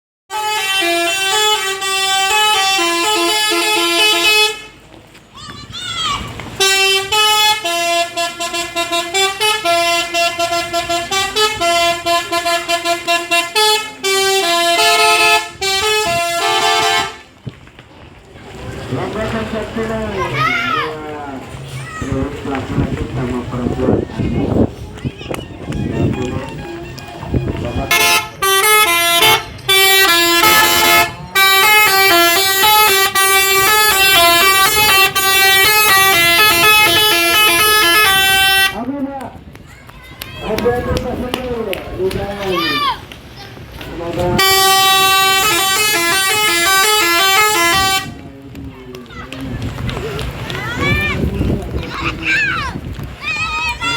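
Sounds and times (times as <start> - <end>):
musical bus horn tooting: 0.3 - 4.8, 6.6 - 17.4, 25.3 - 38.9, 44.3 - 48.3.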